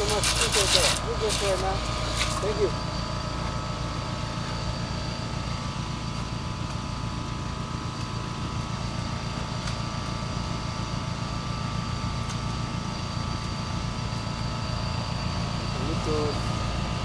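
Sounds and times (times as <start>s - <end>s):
motor humming: 0.0s - 4.6s
thin whine: 0.0s - 4.6s.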